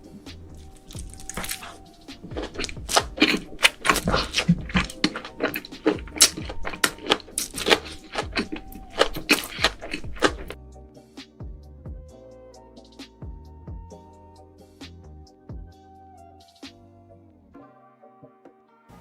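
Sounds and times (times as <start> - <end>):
faint background music: 0.0 - 19.0
chewing and mouth clicks: 0.3 - 10.6.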